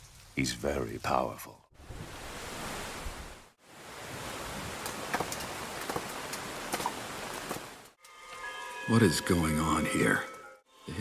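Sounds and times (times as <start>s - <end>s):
heavy rainfall: 2.0s - 8.0s.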